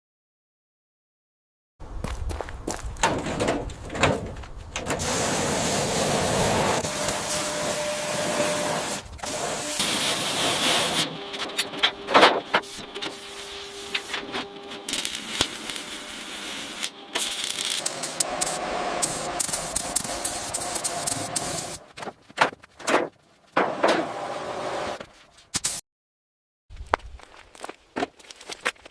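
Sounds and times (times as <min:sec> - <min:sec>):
rubbing and scraping: 0:03.0 - 0:23.9
hissing: 0:12.6 - 0:21.8.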